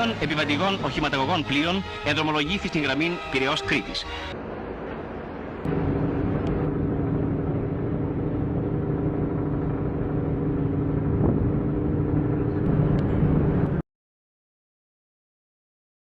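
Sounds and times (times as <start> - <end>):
low rumble: 4.4 - 13.8.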